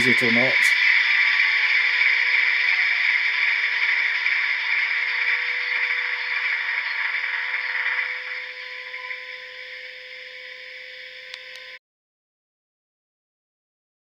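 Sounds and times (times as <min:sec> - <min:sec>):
diesel engine sound through small speaker: 0:00.0 - 0:00.8.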